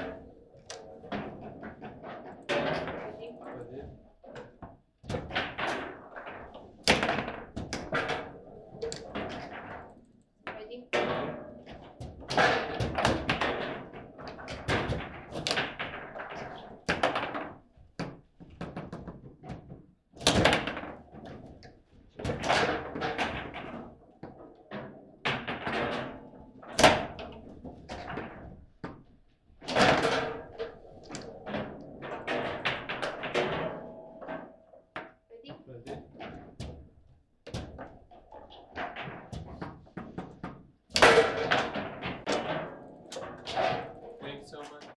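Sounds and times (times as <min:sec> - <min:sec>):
foosball ball knocking: 0:29.6 - 0:35.2, 0:37.5 - 0:44.2.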